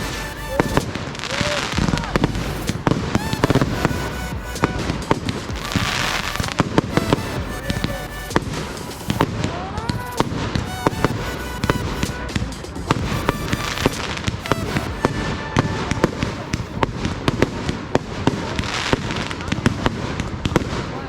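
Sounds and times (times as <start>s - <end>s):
fireworks bangs and crackles: 0.0s - 21.0s.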